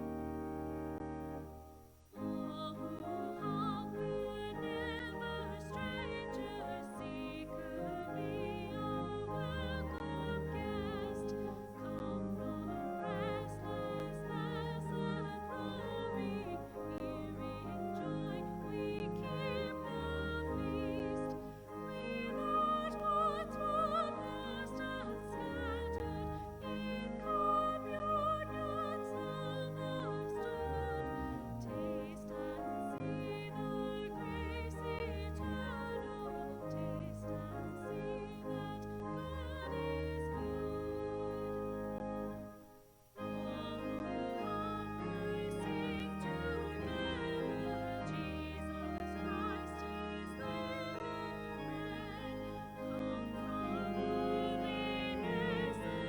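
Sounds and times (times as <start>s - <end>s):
person singing a hymn: 0.0s - 42.6s, 43.2s - 56.0s
sustained instrumental accompaniment: 0.0s - 56.0s.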